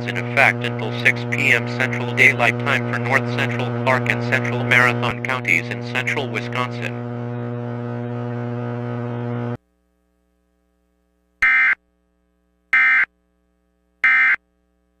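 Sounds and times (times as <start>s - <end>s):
low steady droning tone: 0.0s - 10.9s.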